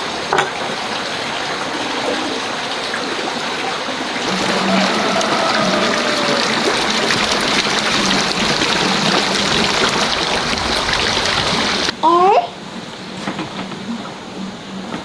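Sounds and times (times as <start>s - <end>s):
running water trickling: 0.0s - 12.0s.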